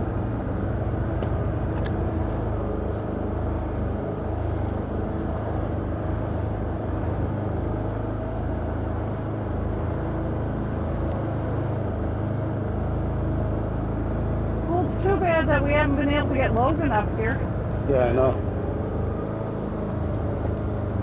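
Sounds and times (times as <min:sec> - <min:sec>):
atv engine running: 0:00.0 - 0:21.0.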